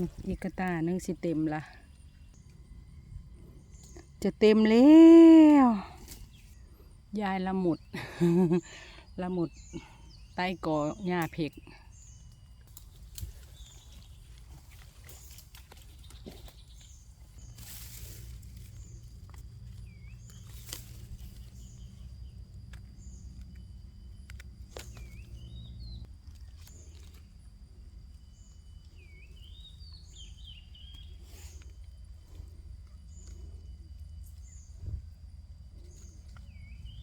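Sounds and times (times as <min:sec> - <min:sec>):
low steady rumble: 0:00.0 - 0:37.0
high insect drone: 0:16.6 - 0:36.8.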